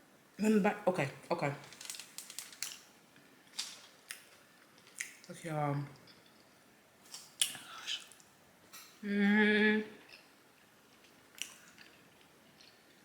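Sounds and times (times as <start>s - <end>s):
person humming mmm: 9.0s - 10.0s.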